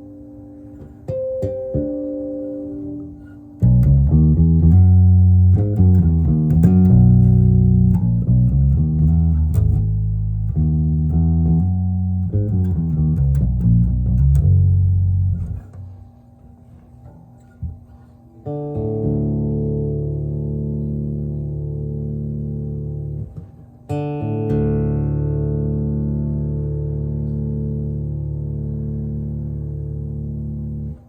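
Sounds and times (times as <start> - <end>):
electric bass notes and riffs: 0.0 - 15.9, 18.4 - 31.0.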